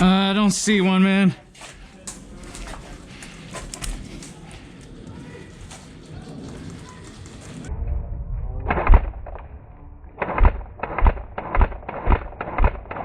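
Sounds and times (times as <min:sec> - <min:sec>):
footsteps with dull thuds: 0:01.4 - 0:07.7.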